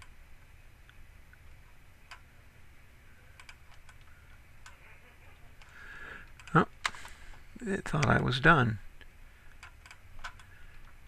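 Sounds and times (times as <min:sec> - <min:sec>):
low steady hum: 0:00.0 - 0:11.0
computer clicks: 0:03.3 - 0:04.8, 0:05.6 - 0:07.2, 0:09.5 - 0:10.9.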